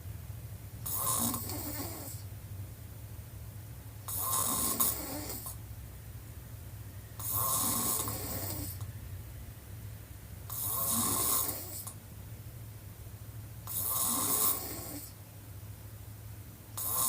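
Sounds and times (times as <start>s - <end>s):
woman snoring: 0.8s - 2.2s, 4.1s - 5.6s, 7.2s - 8.9s, 10.5s - 12.0s, 13.6s - 15.2s, 16.8s - 17.0s.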